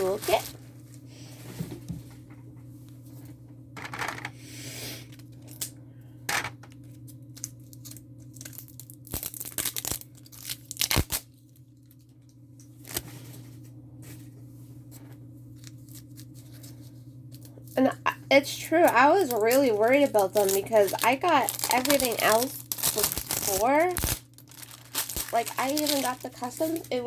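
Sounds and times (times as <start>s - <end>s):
steady low hum: 0.0s - 27.0s
packaging tearing and crinkling: 7.4s - 12.0s, 12.8s - 13.0s, 18.6s - 27.0s.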